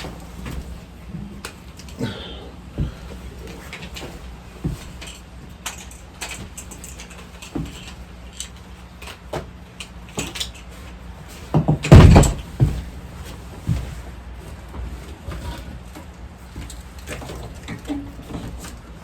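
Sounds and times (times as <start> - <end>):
metal parts clattering: 4.9 - 9.2.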